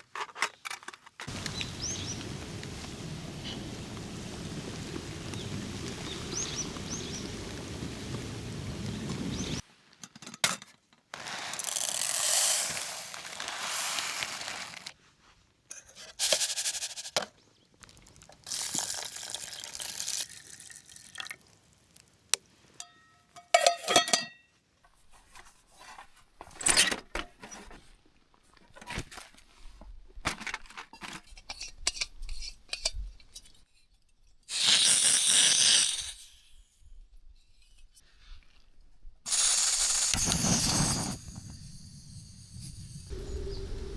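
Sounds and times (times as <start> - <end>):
faint bird chirps: 1.3 - 8.2, 42.8 - 43.9
liquid pouring: 17.8 - 22.3
cookware clinking: 22.8 - 24.4.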